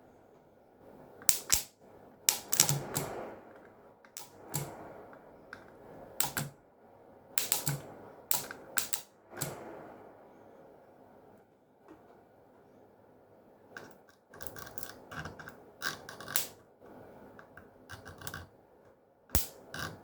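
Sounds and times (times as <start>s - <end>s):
electrical snaps and crackles: 1.2s - 1.7s, 2.3s - 6.6s, 7.4s - 9.8s, 13.8s - 16.7s, 19.3s - 20.0s.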